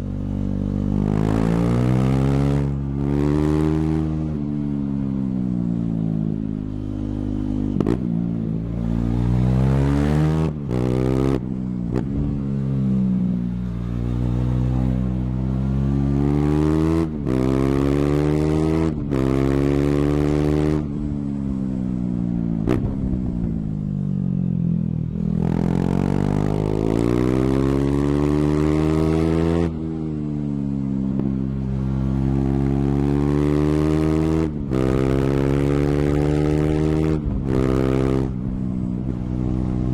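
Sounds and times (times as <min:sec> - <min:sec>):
motorcycle engine revving loud: 0:13.4 - 0:20.9.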